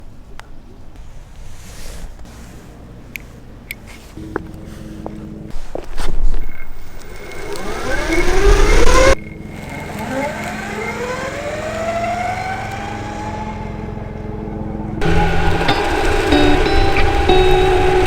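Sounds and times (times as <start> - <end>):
electric skateboard motor whine: 4.2 - 18.0.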